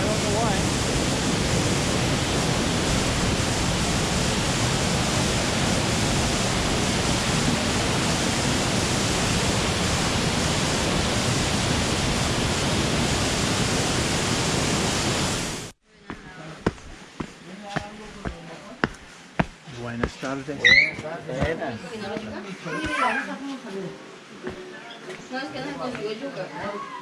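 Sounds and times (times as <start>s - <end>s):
waterfall roaring: 0.0s - 21.0s.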